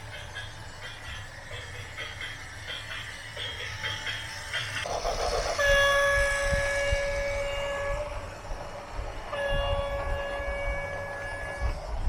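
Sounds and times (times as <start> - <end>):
loud multi-tone horn: 5.6 - 8.2, 9.3 - 11.8.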